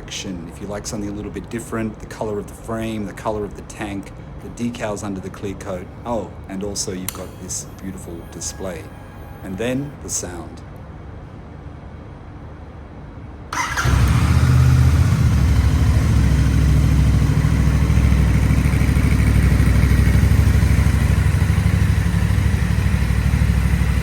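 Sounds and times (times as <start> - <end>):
motorcycle engine starting and idling: 6.7 - 10.2, 13.5 - 24.0.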